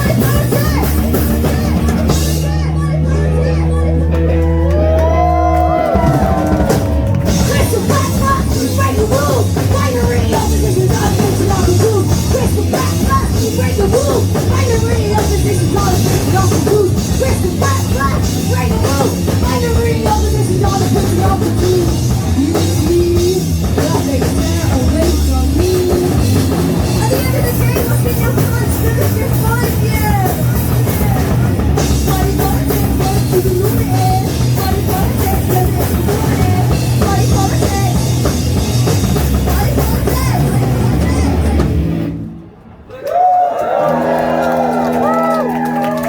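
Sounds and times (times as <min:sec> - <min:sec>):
driving drum kit: 0:00.0 - 0:42.8
bass guitar: 0:00.0 - 0:42.9
punk rock band playing: 0:00.0 - 0:42.9
person singing: 0:05.2 - 0:38.4.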